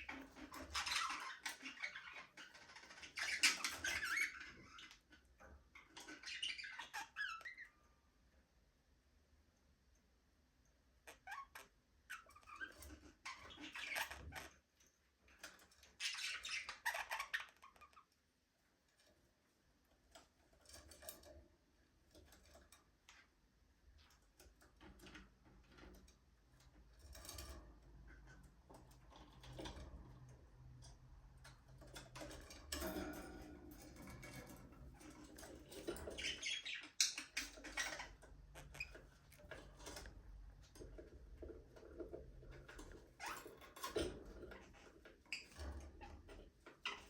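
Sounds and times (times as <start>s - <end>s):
budgerigars chirping: 35.6s - 38.9s.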